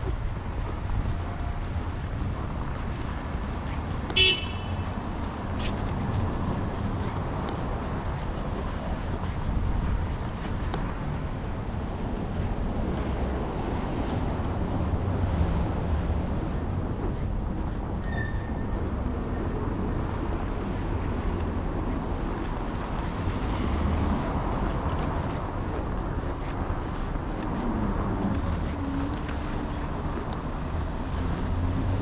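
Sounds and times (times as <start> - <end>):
street traffic rumble: 0.0 - 32.0
car horn toot: 4.1 - 4.9.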